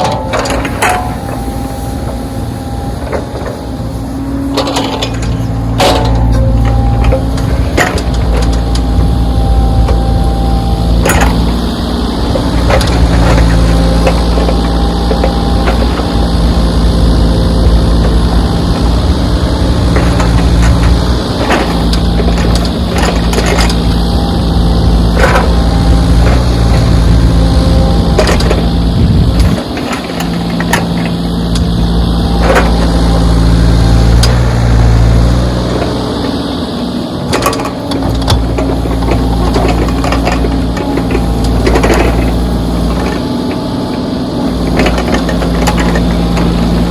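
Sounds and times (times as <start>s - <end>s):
backhoe diesel engine running: 0.0s - 46.9s
sharp metal knocks and clanks: 4.5s - 9.2s.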